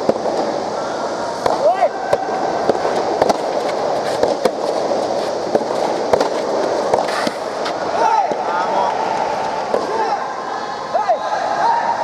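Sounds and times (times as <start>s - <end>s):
crowd hubbub: 0.0s - 12.0s
sharp knocks and pops: 2.7s - 4.8s, 5.5s - 7.8s.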